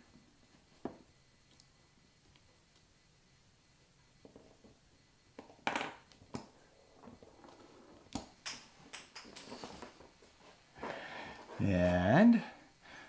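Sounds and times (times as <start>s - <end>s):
rustling of small parts and wires: 6.8s - 12.1s.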